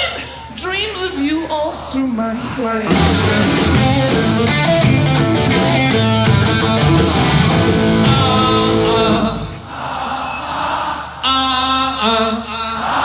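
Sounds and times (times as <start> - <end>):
instrumental rock electric guitar: 2.9 - 9.6.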